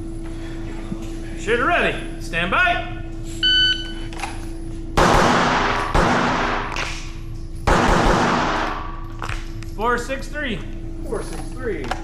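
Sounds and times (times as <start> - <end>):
shot timer beep: 3.4 - 4.0
echoing pistol shots: 5.0 - 6.7, 7.7 - 9.0.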